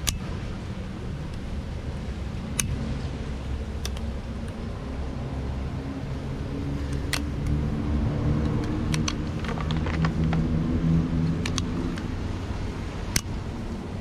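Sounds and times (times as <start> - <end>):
sharp clicks and knocks: 8.4 - 10.5, 11.2 - 12.1.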